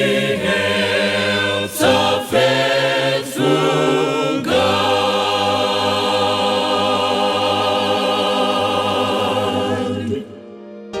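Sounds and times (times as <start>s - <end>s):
choir singing a hymn: 0.0s - 11.0s.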